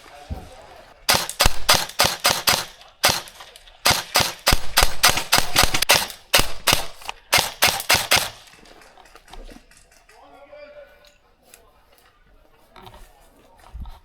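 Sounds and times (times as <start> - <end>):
airsoft guns firing: 1.1 - 10.3.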